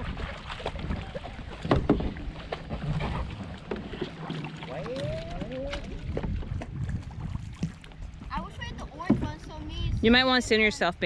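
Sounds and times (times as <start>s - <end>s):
water lapping: 0.0s - 11.0s
wind on microphone: 0.0s - 11.0s
knocks on kayak hull: 1.6s - 4.1s, 9.0s - 9.4s.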